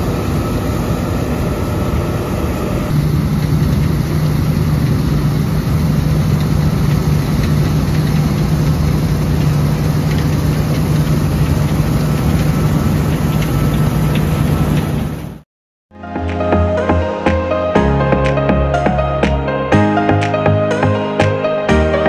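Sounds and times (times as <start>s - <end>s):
diesel engine running: 0.0s - 15.4s.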